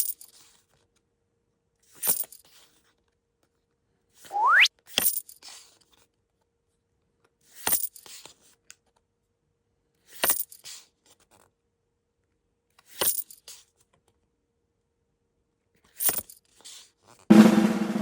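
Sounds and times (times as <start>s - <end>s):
coin clinks with rattle: 2.0s - 2.4s, 16.0s - 16.4s.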